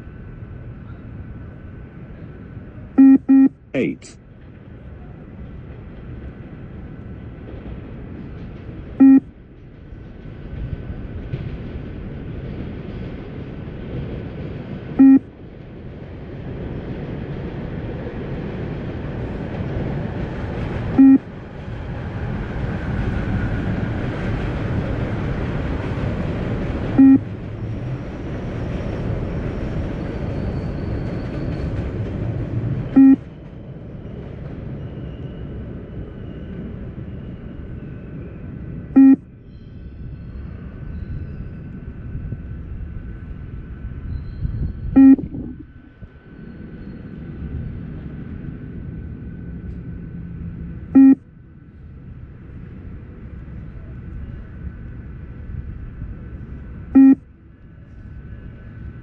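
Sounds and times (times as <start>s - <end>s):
short electronic beeps: 3.0s - 4.0s, 9.0s - 9.2s, 15.0s - 15.2s, 21.0s - 21.2s, 27.0s - 27.2s, 33.0s - 33.2s, 39.0s - 39.2s, 45.0s - 45.6s, 51.0s - 51.2s, 57.0s - 57.2s.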